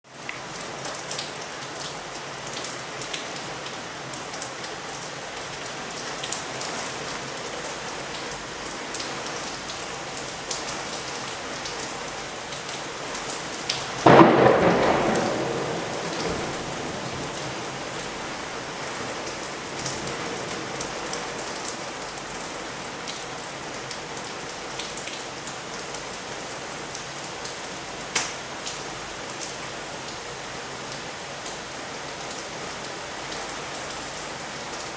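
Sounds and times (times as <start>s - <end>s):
heavy rain falling: 0.1s - 34.9s
thunder crack: 14.0s - 18.4s.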